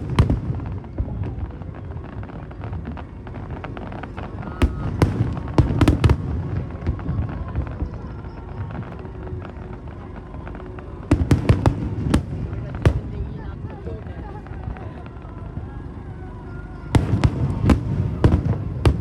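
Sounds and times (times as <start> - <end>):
sharp fireworks cracks: 0.0 - 15.7, 16.9 - 19.0
fireworks rumbling: 0.0 - 19.0.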